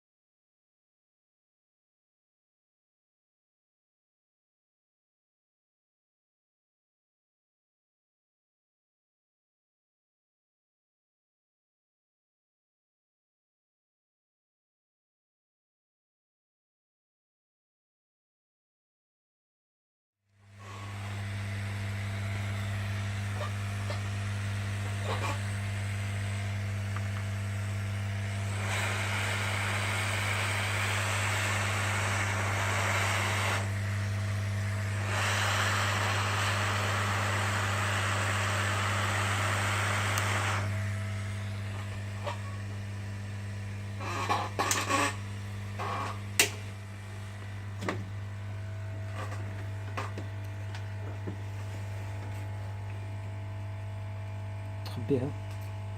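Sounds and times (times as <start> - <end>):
steady electrical hum: 20.9 - 35.0, 39.2 - 55.9
hissing air: 35.0 - 40.7.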